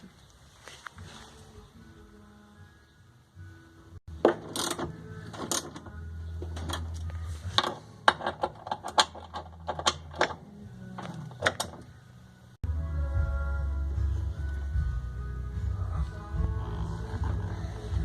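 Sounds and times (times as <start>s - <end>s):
soft background music: 0.4s - 18.0s
sharp metallic clicks and knocks: 7.6s - 10.4s.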